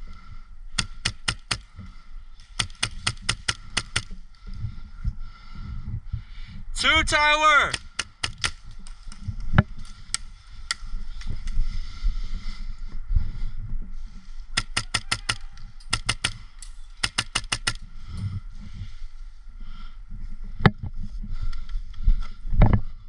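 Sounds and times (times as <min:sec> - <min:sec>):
airsoft rifles firing: 0:00.7 - 0:01.7, 0:02.4 - 0:04.1, 0:07.6 - 0:08.7, 0:14.6 - 0:17.8.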